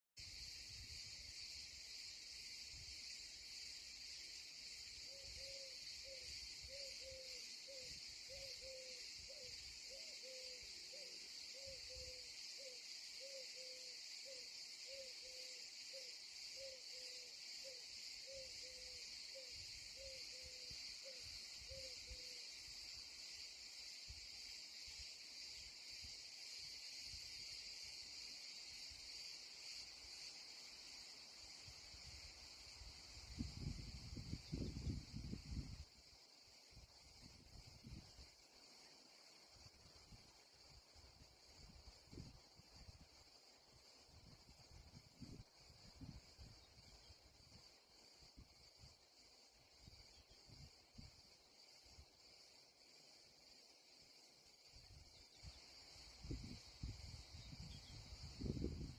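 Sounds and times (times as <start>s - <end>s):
insect chorus chirring: 0.2s - 58.9s.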